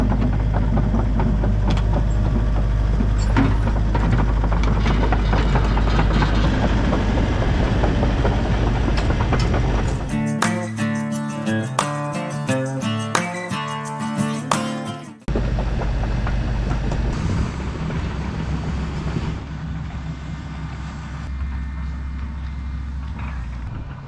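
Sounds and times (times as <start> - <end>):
excavator diesel engine running: 0.0 - 10.8, 15.2 - 24.0
metal knocks and clanks: 0.0 - 10.8
acoustic guitar music: 9.7 - 15.3.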